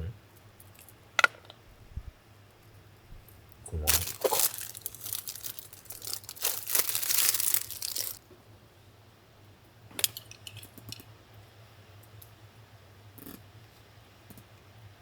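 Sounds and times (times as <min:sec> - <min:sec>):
packaging crinkling and tearing: 0:03.8 - 0:08.2.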